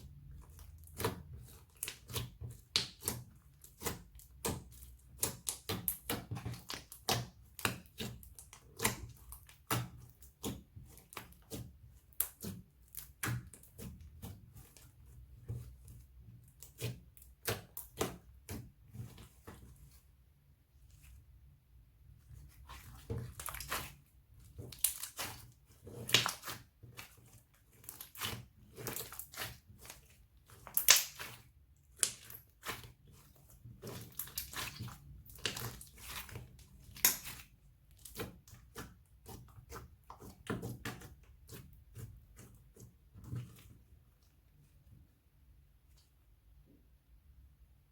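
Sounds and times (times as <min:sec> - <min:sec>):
slime squishing and popping: 0:22.7 - 0:42.0.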